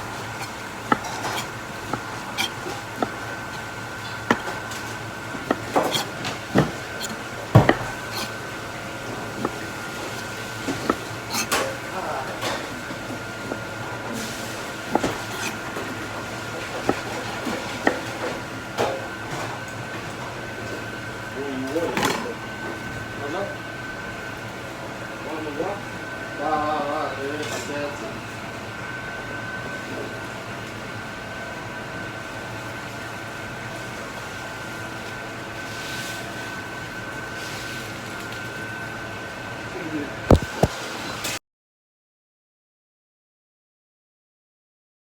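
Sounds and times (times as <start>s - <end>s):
kitchen equipment hum: 0.0s - 19.2s, 39.7s - 41.3s
pans and utensils clinking: 5.5s - 8.3s, 9.4s - 11.8s, 14.9s - 15.6s.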